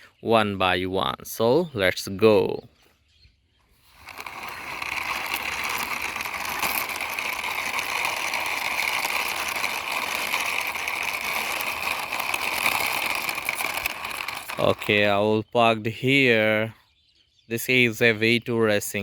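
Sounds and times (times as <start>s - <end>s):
toy car wheels whirring: 3.8s - 15.2s.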